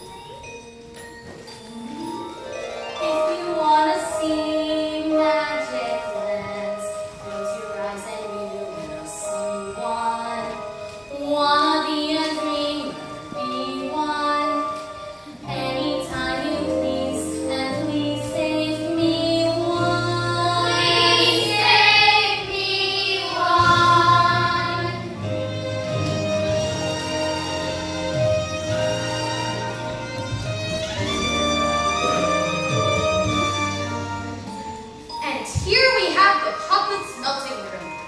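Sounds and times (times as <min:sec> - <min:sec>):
musical accompaniment: 0:00.0 - 0:38.0
children singing together: 0:15.5 - 0:25.3.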